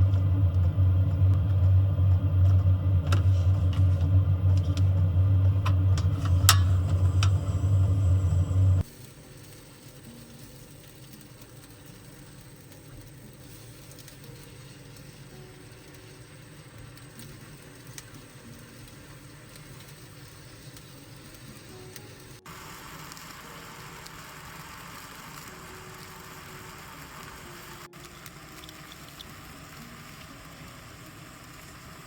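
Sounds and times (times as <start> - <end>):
steady low hum: 0.0 - 8.9
faint even hiss: 0.0 - 32.0.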